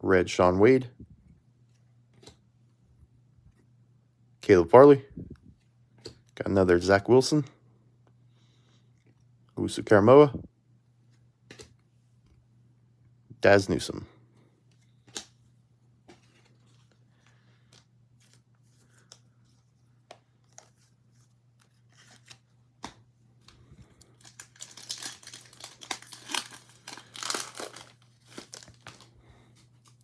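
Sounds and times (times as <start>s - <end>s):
cards clicking and tapping: 15.0s - 15.4s, 21.6s - 23.6s
wrapper tearing and crinkling: 24.0s - 29.1s.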